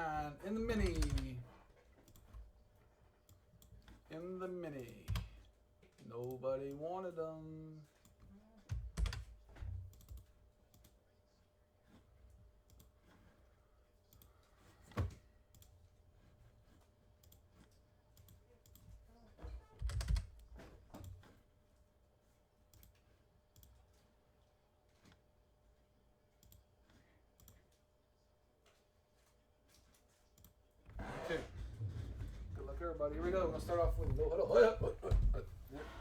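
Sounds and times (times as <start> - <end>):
computer keyboard typing: 0.5 - 1.4, 4.7 - 5.5, 8.0 - 11.0, 19.6 - 21.2.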